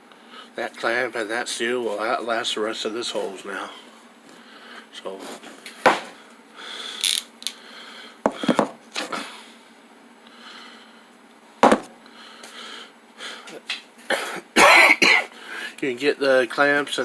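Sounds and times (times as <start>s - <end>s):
tools and parts clicking: 7.0s - 7.6s.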